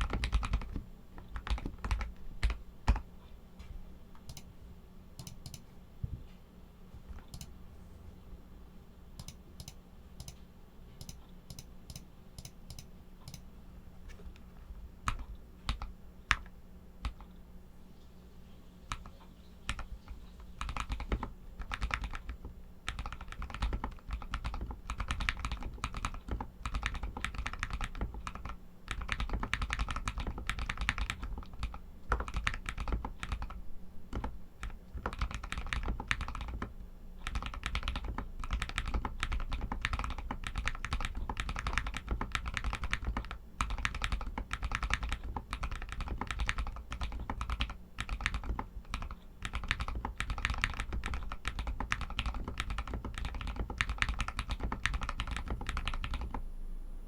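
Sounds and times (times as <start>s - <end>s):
mechanical keyboard typing: 0.0s - 3.1s, 5.2s - 5.6s, 11.0s - 13.4s, 15.1s - 17.3s, 18.9s - 56.4s.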